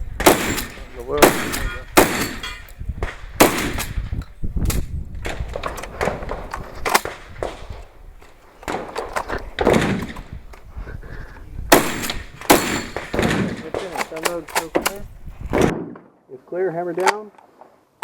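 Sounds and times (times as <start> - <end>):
pistol shots with echo: 0.2 - 4.0, 9.6 - 10.3, 11.7 - 15.0.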